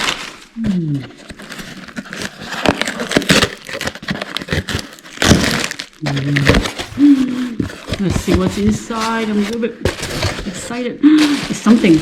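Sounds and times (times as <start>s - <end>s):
gift paper tearing and crinkling: 0.0s - 12.0s
loud paper rip: 2.0s - 7.3s.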